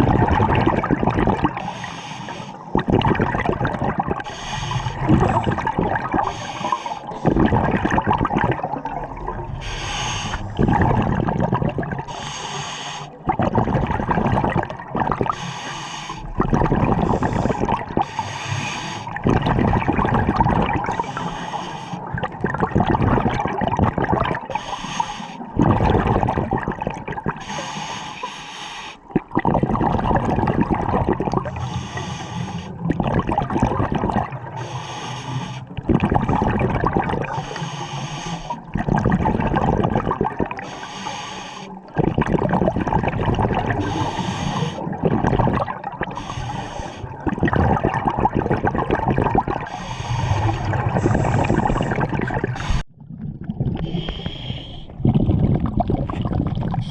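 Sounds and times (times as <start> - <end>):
exhaled bubbles rushing: 0.0 - 1.8, 2.6 - 12.3, 13.1 - 15.4, 16.1 - 24.7, 25.4 - 27.5, 29.1 - 31.7, 32.7 - 34.7, 35.6 - 37.7, 38.4 - 40.8, 41.8 - 56.9
diver breathing through regulator: 1.5 - 2.8, 4.2 - 7.6, 9.5 - 11.2, 12.0 - 13.3, 15.3 - 19.3, 20.9 - 22.2, 24.5 - 25.6, 27.4 - 29.1, 31.4 - 32.9, 34.5 - 35.8, 37.2 - 38.7, 40.5 - 41.9, 43.7 - 45.4, 46.0 - 47.3, 49.5 - 52.9, 53.8 - 55.2.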